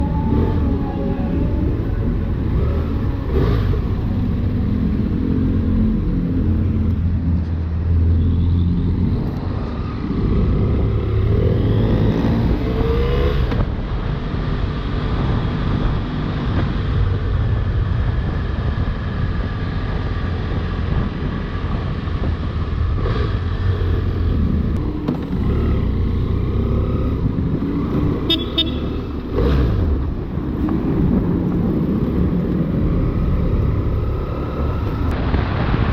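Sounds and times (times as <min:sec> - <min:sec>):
motorcycle engine accelerating: 0:00.0 - 0:07.2.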